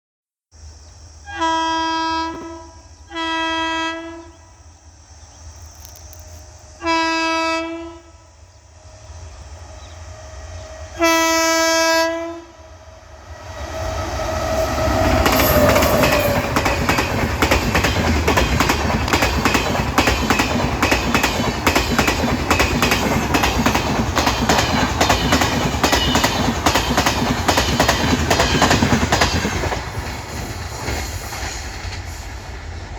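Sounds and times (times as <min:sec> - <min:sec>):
train passing rumble: 0:00.6 - 0:32.9
train horn blasts: 0:01.3 - 0:04.6, 0:06.8 - 0:08.4, 0:10.8 - 0:12.8
wheels clattering over rail joints: 0:14.7 - 0:32.1.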